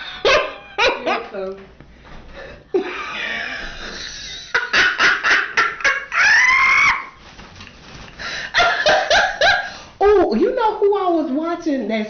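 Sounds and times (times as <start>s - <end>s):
person crying out high-pitched: 6.1s - 7.2s.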